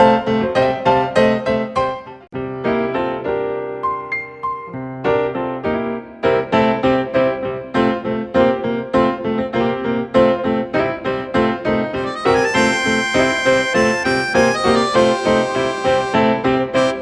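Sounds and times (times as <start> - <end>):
bouncy piano melody: 12.0 - 17.0.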